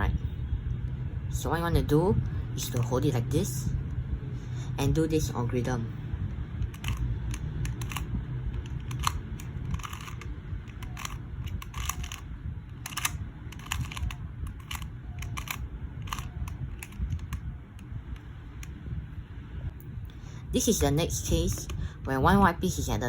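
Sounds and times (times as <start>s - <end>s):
low background rumble: 0.0s - 23.0s
speed cube plastic clicks: 6.6s - 17.9s.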